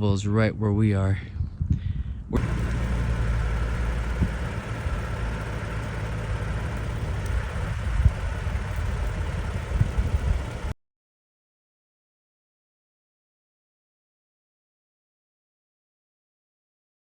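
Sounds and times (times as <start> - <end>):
engine rumbling: 2.3 - 10.8.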